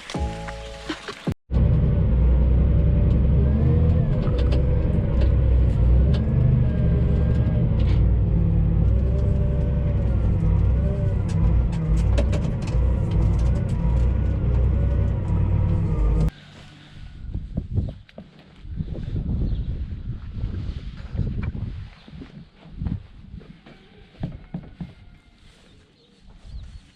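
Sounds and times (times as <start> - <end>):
farm machinery engine rumbling: 1.5 - 16.9.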